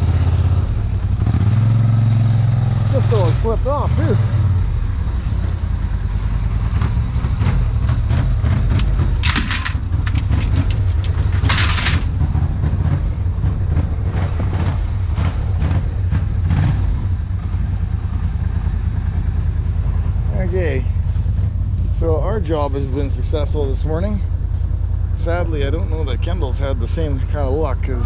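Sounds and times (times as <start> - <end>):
engine low rumble: 0.0 - 28.0
rattles and knocks: 5.0 - 16.3.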